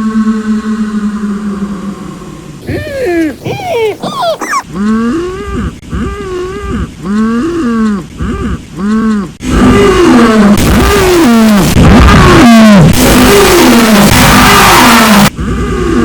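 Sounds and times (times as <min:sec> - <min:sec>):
character humming: 0:02.6 - 0:10.3.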